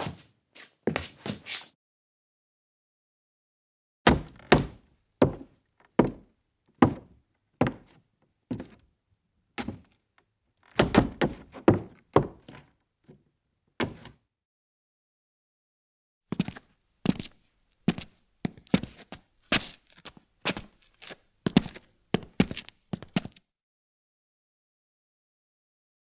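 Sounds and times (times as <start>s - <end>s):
footsteps in boots: 0.0s - 1.7s, 5.2s - 7.9s, 16.3s - 23.4s.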